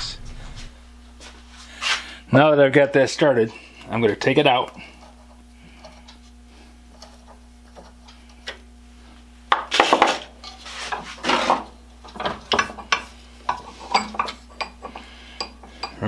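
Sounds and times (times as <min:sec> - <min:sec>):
steel tools clinking on metal: 0:13.9 - 0:16.0.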